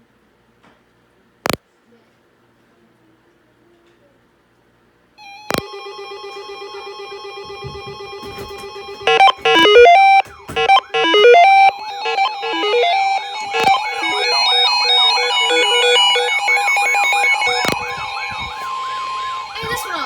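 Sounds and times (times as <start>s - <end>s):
siren-like electronic warble: 5.5s - 20.0s
electronic beep melody: 8.3s - 20.0s.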